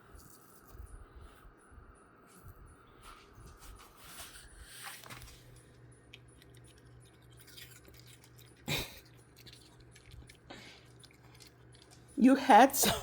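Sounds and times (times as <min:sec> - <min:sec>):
dogs crunching food: 0:04.7 - 0:12.3.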